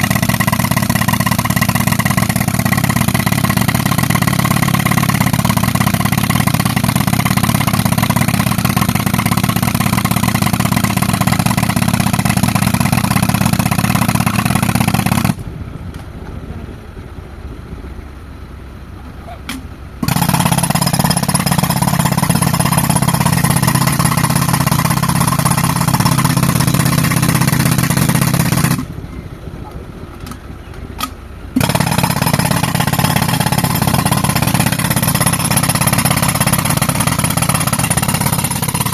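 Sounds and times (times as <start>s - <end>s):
pneumatic rock breaker hammering: 19.4s - 28.9s, 31.0s - 38.9s
compressor engine running: 20.0s - 30.4s, 31.0s - 38.9s.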